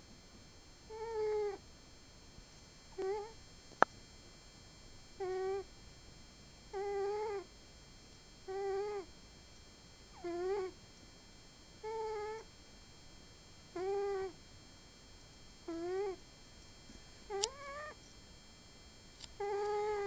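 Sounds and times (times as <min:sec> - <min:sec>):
cat snoring: 0:00.9 - 0:01.6, 0:03.0 - 0:03.3, 0:05.2 - 0:05.7, 0:06.7 - 0:07.5, 0:08.5 - 0:09.1, 0:10.1 - 0:10.8, 0:11.8 - 0:12.5, 0:13.8 - 0:14.4, 0:15.7 - 0:16.2, 0:19.4 - 0:20.0.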